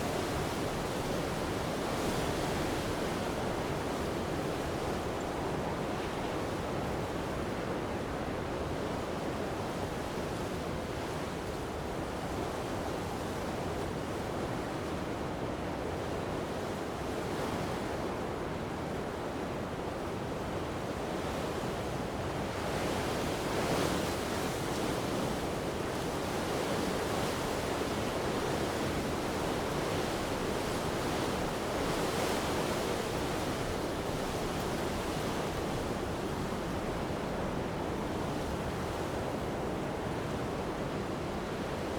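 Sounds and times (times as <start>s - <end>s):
surf washing: 22.9s - 41.9s.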